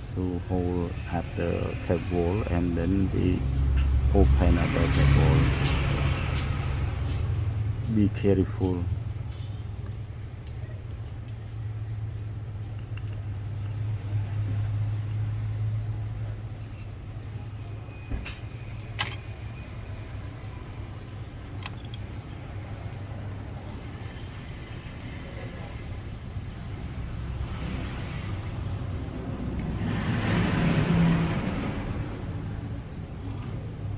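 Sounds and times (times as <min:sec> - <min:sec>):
steady low hum: 0:00.0 - 0:12.6
metal tweezers clicking on parts: 0:09.2 - 0:13.8, 0:19.0 - 0:19.3, 0:21.1 - 0:22.2.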